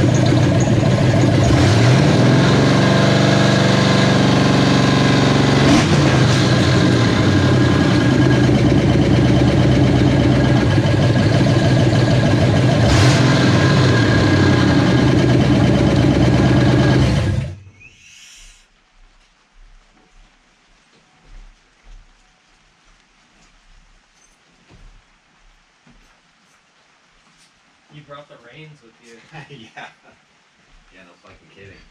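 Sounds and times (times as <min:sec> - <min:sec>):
car engine running: 0:00.0 - 0:17.7.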